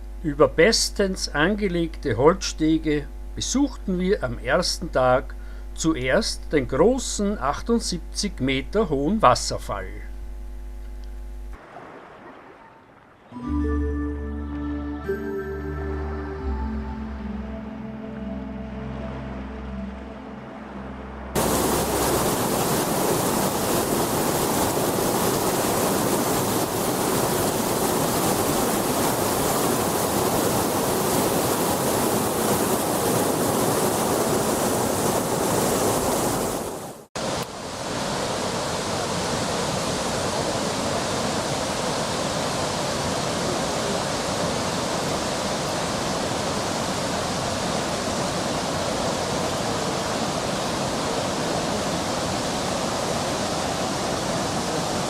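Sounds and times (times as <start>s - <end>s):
waterfall rushing: 15.0s - 55.0s.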